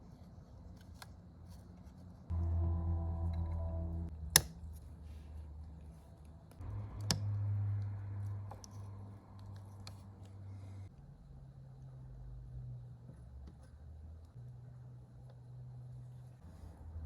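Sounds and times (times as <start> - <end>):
steady low hum: 2.3 - 5.9.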